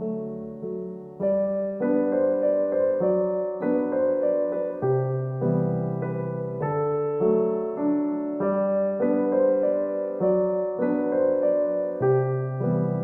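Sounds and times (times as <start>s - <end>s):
gentle slow piano piece: 0.0s - 13.0s.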